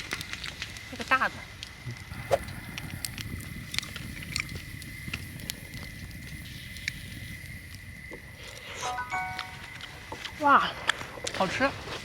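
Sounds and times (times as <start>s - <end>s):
wood fire crackling: 0.0s - 12.0s.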